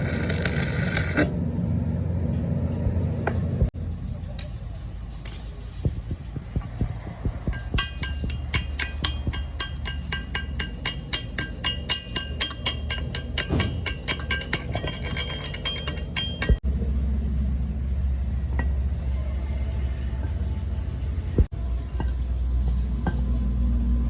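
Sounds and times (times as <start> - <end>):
steady low hum: 0.0 - 24.0
hammering on metal: 5.8 - 16.6.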